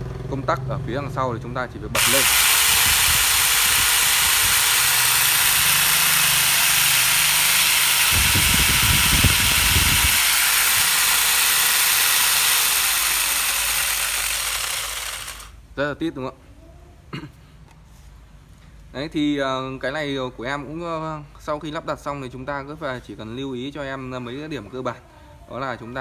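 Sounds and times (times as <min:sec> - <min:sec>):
angle grinder whining: 0:02.0 - 0:15.5.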